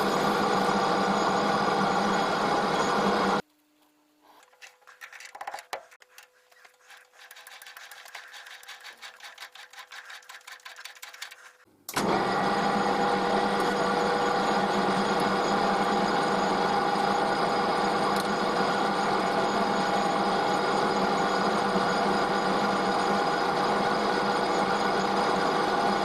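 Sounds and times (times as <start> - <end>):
loud machine humming: 0.0 - 3.4, 11.9 - 26.0.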